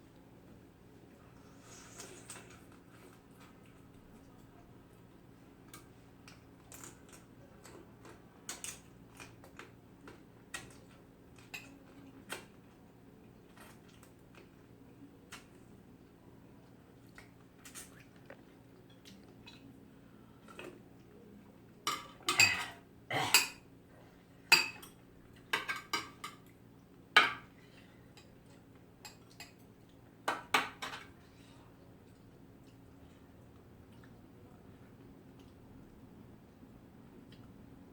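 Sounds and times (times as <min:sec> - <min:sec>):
utensils clinking on dishes: 0:21.9 - 0:23.6.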